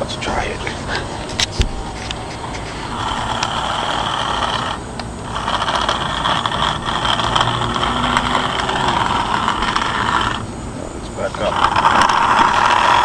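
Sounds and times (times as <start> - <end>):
toy car motor whirring: 2.1 - 10.5, 11.2 - 13.0.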